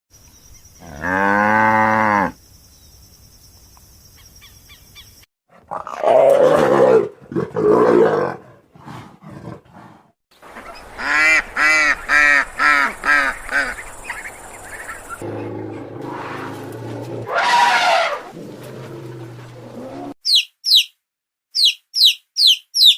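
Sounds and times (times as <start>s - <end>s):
rough noisy animal calls: 10.4s - 20.2s.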